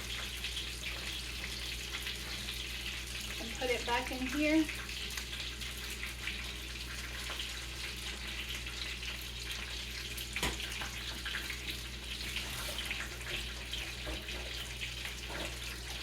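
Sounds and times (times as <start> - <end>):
tap running into sink: 10.4 - 10.9.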